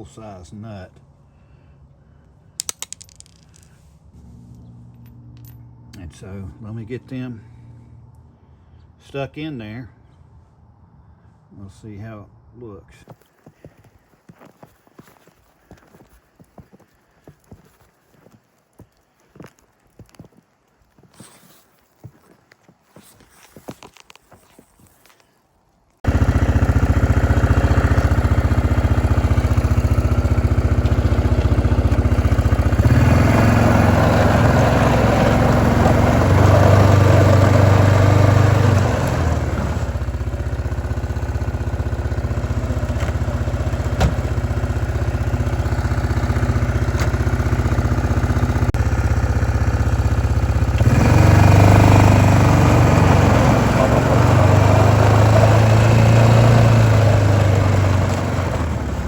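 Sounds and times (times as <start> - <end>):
motor running steadily: 26.1 - 54.2.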